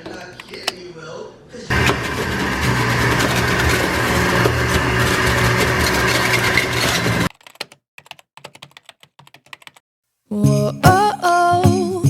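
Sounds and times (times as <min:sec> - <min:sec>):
machine running with low hum: 0:01.7 - 0:07.3.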